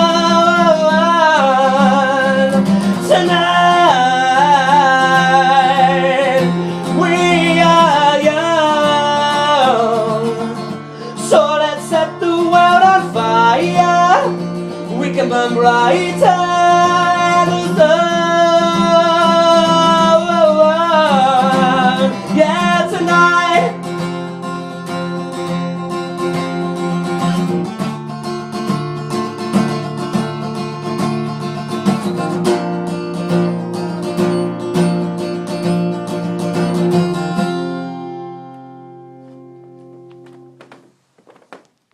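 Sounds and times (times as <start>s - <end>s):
acoustic guitar strumming: 0.0s - 41.9s.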